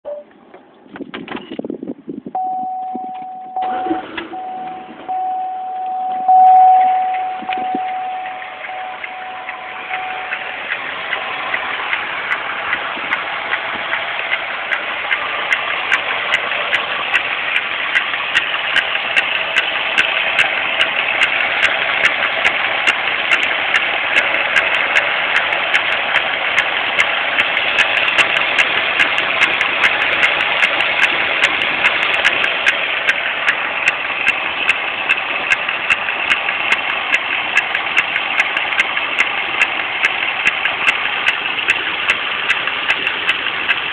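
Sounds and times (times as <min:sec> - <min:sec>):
car engine starting and idling: 0:00.1 - 0:43.9
high warning tone: 0:02.4 - 0:10.9
engine clicking: 0:02.4 - 0:43.9.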